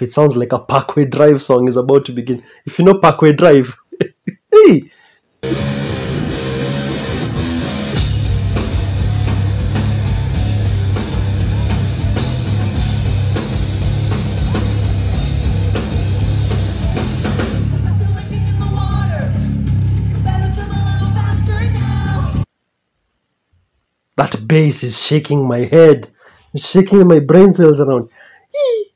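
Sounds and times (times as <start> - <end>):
distorted electric guitar riff: 5.4 - 22.4
bass: 5.4 - 22.5
drums: 5.4 - 22.5.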